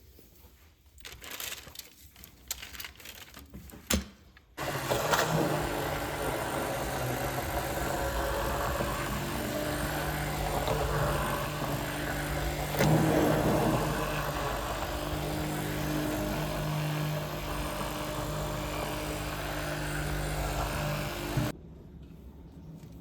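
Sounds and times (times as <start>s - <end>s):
motor humming: 4.6s - 21.5s.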